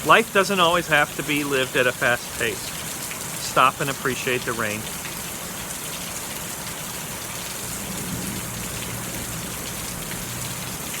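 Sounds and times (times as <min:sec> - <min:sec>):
rain falling and splashing: 0:00.0 - 0:11.0.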